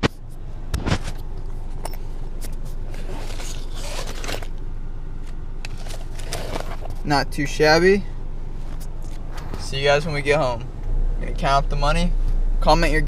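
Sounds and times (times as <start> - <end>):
rustling and scraping handling noise: 0.0 - 7.1, 8.4 - 9.8
car interior rumble: 0.0 - 13.0.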